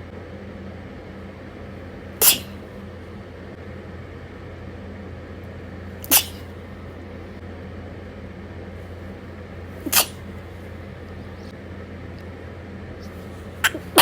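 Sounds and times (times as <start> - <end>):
steady low hum: 0.0 - 14.0
person sneezing: 2.2 - 2.6, 6.0 - 6.5, 9.8 - 10.3, 13.6 - 14.0.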